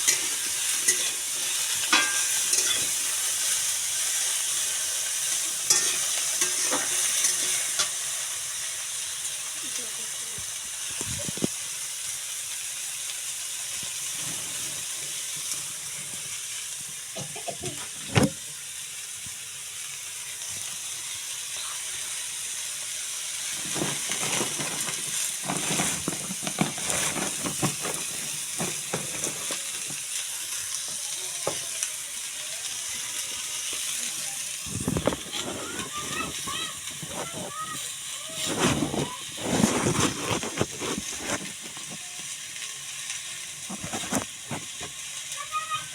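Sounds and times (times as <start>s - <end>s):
spoon knocking and scraping pan: 0.0s - 3.5s, 5.6s - 8.0s, 23.5s - 30.0s
curry sizzling in a pan: 0.0s - 45.9s.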